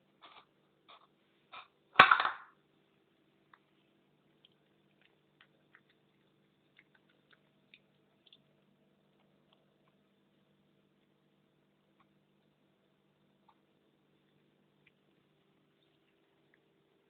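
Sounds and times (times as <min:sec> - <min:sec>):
cat chewing crunches: 0:03.2 - 0:12.6, 0:13.3 - 0:17.0.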